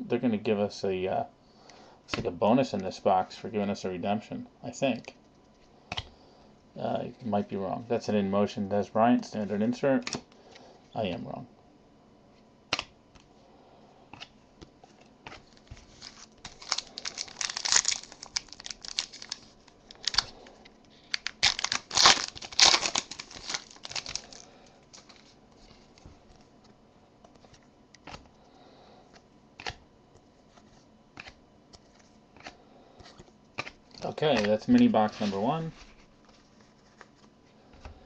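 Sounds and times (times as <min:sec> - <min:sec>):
cards and wrappers clicking: 0:15.2 - 0:25.2, 0:31.2 - 0:35.3
packaging tearing and crinkling: 0:15.4 - 0:26.0.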